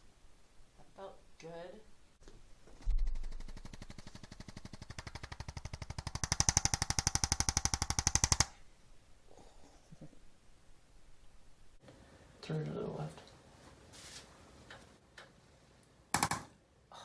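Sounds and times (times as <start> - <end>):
mechanical percussion device tapping: 16.2 - 16.5.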